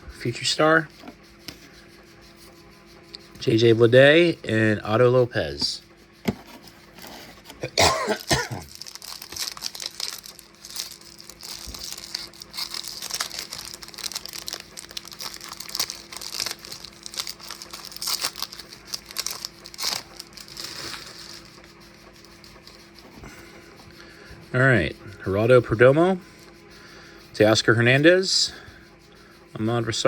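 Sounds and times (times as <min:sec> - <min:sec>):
wrapper crinkling and tearing: 0:08.2 - 0:21.5.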